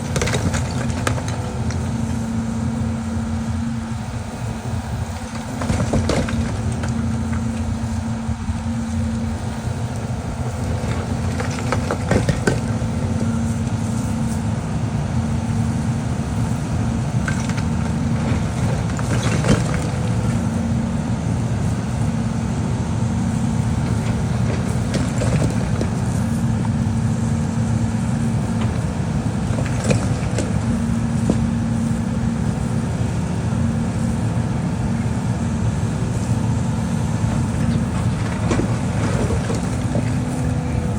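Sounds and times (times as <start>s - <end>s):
diesel demolition machine running: 0.0s - 40.9s
debris knocking and crunching: 5.2s - 7.6s.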